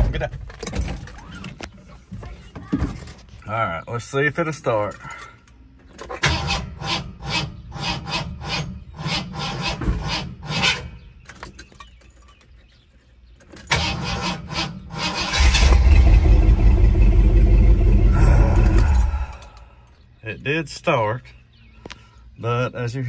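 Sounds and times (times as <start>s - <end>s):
engine cranking by starter: 6.0s - 10.8s, 13.7s - 19.6s
engine running loud: 15.3s - 19.6s.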